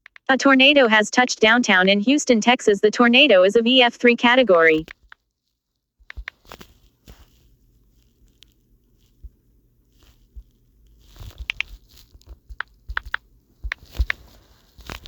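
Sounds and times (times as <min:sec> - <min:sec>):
soft clicks and crackly ticks: 0:06.0 - 0:06.7, 0:08.0 - 0:09.4, 0:10.0 - 0:15.0.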